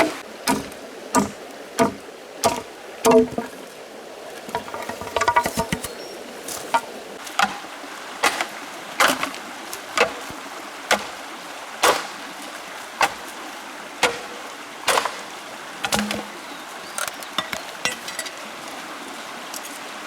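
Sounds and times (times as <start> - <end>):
sharp knocks: 0.0 - 3.6, 4.5 - 6.0, 6.6 - 7.6, 10.0 - 11.2, 14.0 - 15.2, 15.8 - 16.4.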